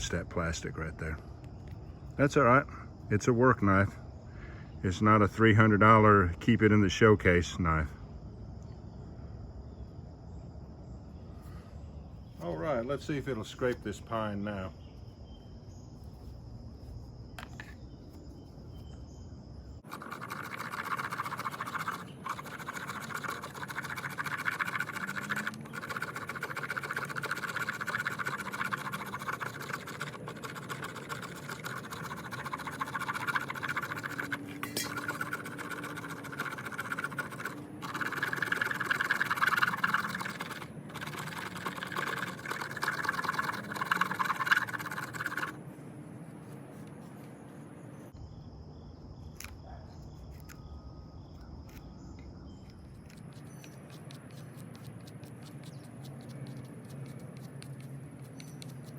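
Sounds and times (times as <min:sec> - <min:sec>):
knife spine scraping wood: 0:29.0 - 0:40.5.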